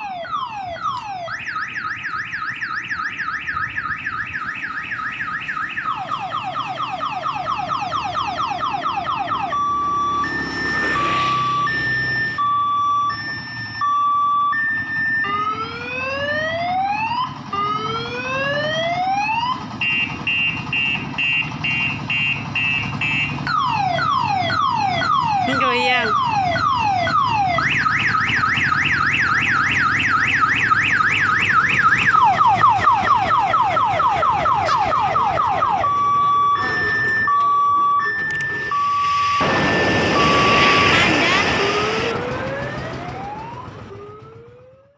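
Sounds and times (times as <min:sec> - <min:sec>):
electronic siren cycling tones: 0:00.0 - 0:44.9
loud rush of noise: 0:38.7 - 0:43.1.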